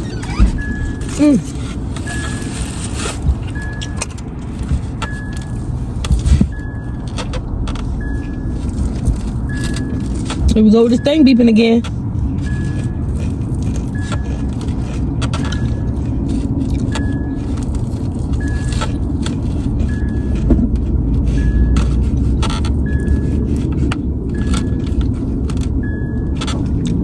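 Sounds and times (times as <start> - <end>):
low car rumble: 0.0 - 27.0
car warning chime beeps: 0.5 - 2.6, 3.5 - 14.6, 15.4 - 16.1, 16.9 - 17.5, 18.4 - 19.2, 19.8 - 22.1, 22.8 - 25.1, 25.8 - 26.4.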